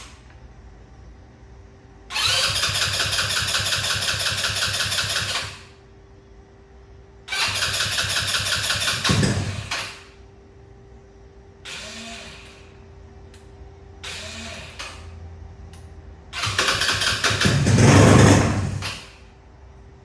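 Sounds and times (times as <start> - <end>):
electric starter cranking engine: 2.1 - 5.7, 7.3 - 10.1, 16.4 - 19.2.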